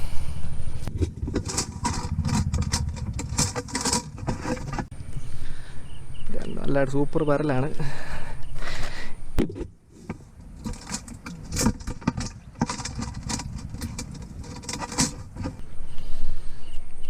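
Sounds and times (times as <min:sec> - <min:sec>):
low rumble: 0:00.0 - 0:06.3.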